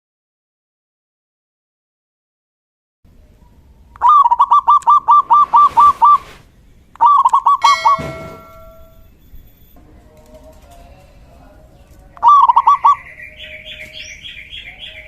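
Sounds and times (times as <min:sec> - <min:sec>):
dove cooing: 0:04.0 - 0:06.4, 0:07.0 - 0:08.8, 0:12.2 - 0:15.0
ringing tone: 0:07.6 - 0:09.8.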